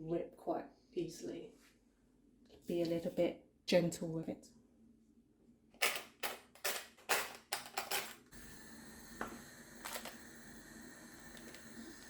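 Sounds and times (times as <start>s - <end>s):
faint steady hum: 8.0s - 12.0s.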